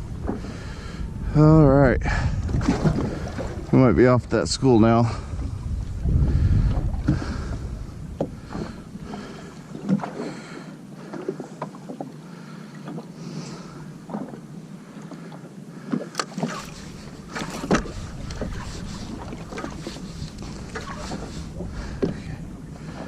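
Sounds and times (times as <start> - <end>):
wind rumble on microphone: 0.0 - 10.2, 16.4 - 23.0
water lapping against hull: 0.0 - 23.0.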